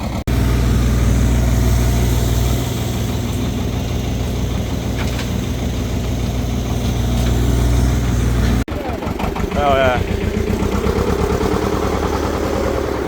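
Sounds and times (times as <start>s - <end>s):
engine running with low hum: 0.0s - 13.0s.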